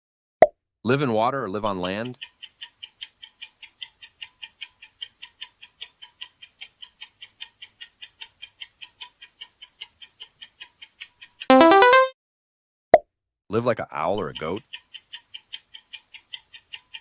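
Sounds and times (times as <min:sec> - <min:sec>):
clock ticking: 0:01.7 - 0:12.0, 0:14.2 - 0:17.0.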